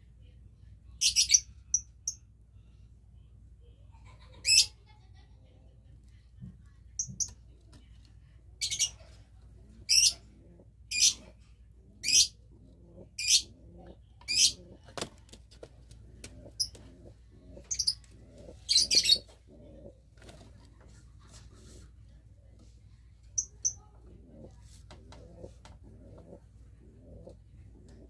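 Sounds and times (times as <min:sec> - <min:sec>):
pigeons cooing: 0:09.6 - 0:15.0, 0:15.9 - 0:20.4, 0:24.0 - 0:28.0.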